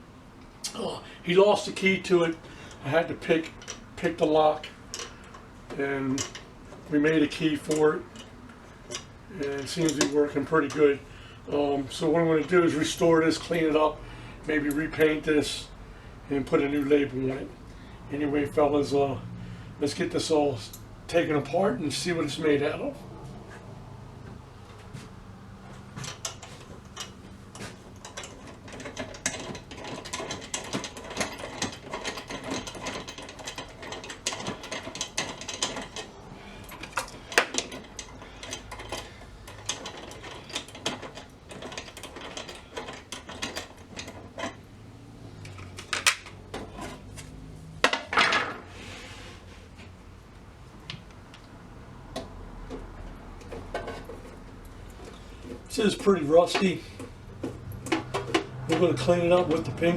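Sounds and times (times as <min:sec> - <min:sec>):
metal parts clicking and rattling: 0:01.6 - 0:15.2, 0:25.7 - 0:48.6, 0:52.1 - 0:59.9.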